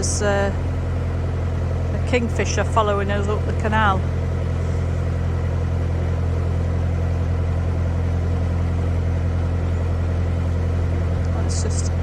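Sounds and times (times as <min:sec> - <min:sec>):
boat engine humming: 0:00.0 - 0:12.0.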